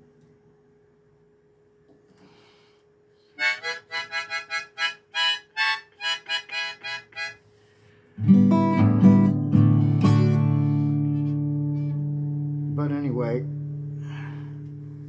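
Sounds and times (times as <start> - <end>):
harmonica notes: 3.4 - 7.7
guitar chord strummed: 8.2 - 15.0.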